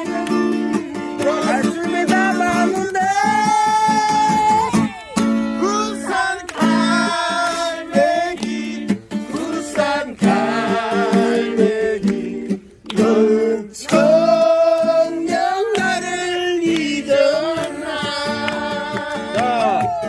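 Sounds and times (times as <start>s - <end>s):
person singing: 0.0s - 12.4s, 16.6s - 20.0s
acoustic guitar: 0.0s - 20.0s.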